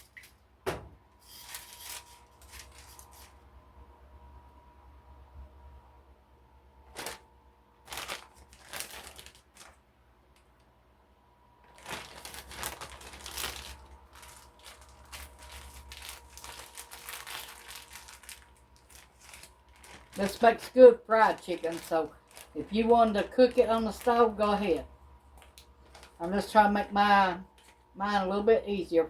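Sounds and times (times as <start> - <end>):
kitchen material crinkling: 1.2 - 3.4, 6.9 - 10.5, 11.6 - 28.8.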